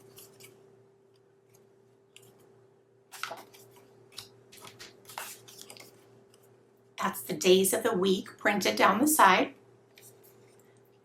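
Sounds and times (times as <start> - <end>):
paper cards rustling and tapping: 0.0 - 0.6, 3.1 - 6.5
faint steady hum: 0.0 - 11.0.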